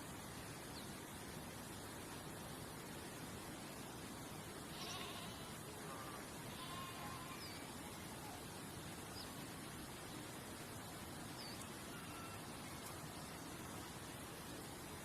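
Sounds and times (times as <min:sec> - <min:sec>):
soft steady outdoor hiss: 0:00.0 - 0:15.0
faint bird chirps: 0:05.9 - 0:08.5, 0:11.3 - 0:13.3.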